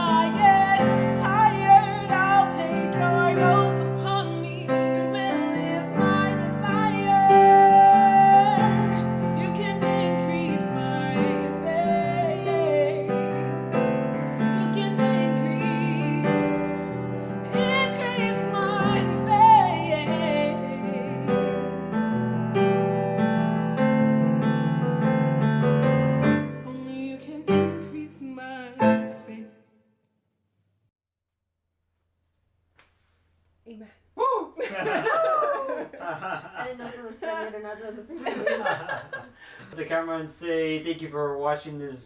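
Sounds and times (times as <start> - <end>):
woman singing with vibrato: 0.0 - 22.0, 26.6 - 29.6
piano chords: 0.0 - 29.5.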